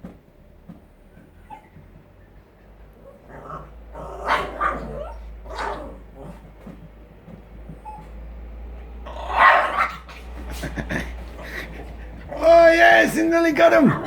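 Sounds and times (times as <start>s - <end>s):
puppy barking: 3.0s - 6.4s, 9.1s - 10.5s, 13.8s - 14.0s.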